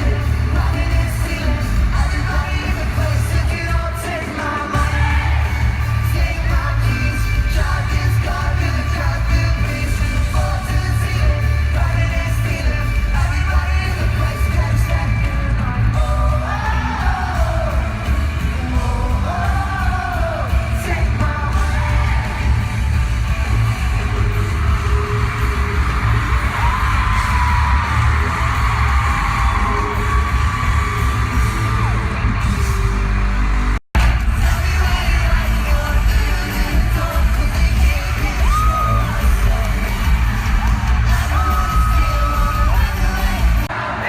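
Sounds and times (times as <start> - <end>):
live pop-rock band playing: 0.0 - 43.8
fans screaming and singing along: 0.0 - 44.0
person singing vocal melody: 34.0 - 44.0.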